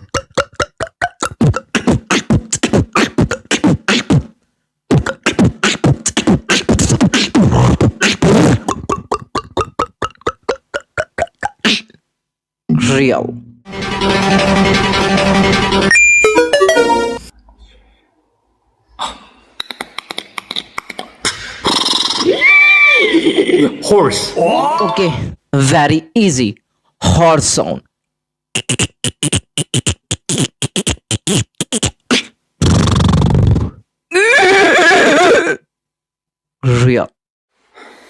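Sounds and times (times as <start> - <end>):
horse whinny: 34.1 - 35.5.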